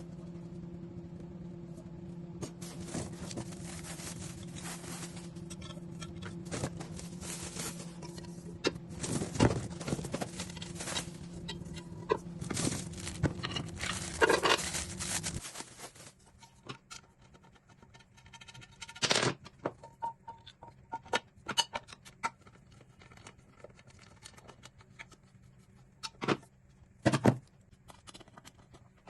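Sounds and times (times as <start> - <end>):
steady low hum: 0.0 - 18.3
rustling packaging: 2.4 - 16.4.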